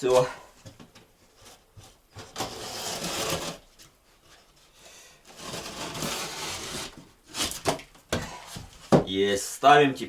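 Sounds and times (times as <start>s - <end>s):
knife scraping drywall: 2.3s - 3.6s, 5.3s - 7.8s.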